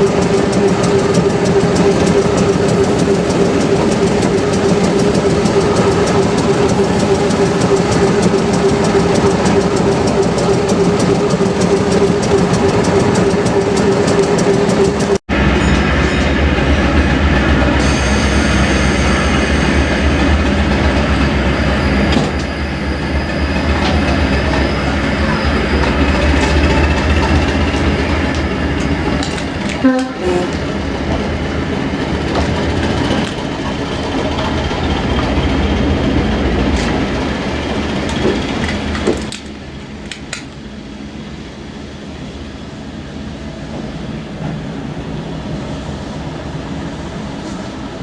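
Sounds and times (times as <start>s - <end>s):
wheels clicking over rail joints: 0.0s - 21.4s, 23.6s - 40.6s
steady whine: 0.0s - 29.7s
diesel train engine: 0.0s - 48.0s.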